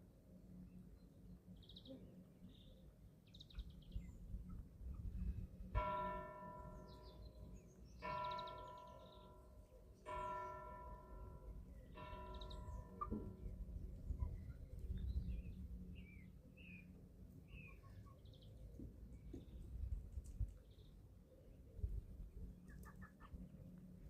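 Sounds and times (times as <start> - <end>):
church bell tolling: 5.7 - 14.1
chicks peeping: 22.5 - 23.5.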